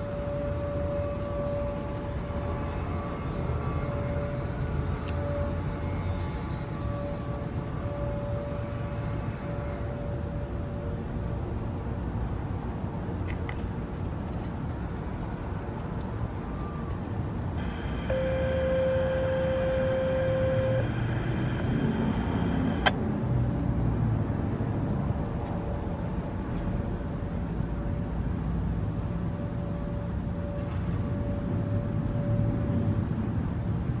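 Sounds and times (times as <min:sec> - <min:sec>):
faint steady tone: 0:00.0 - 0:11.8, 0:16.2 - 0:23.0, 0:26.8 - 0:33.3
outdoor city background noise: 0:00.0 - 0:34.0
chord of electronic tones: 0:17.6 - 0:22.9.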